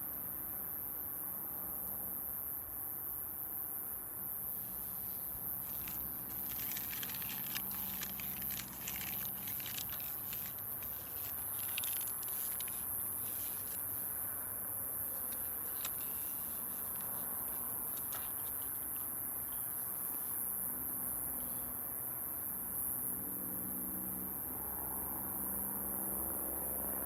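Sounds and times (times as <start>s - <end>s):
soft steady hiss: 2.0s - 21.7s
wood fire crackling: 5.7s - 13.7s.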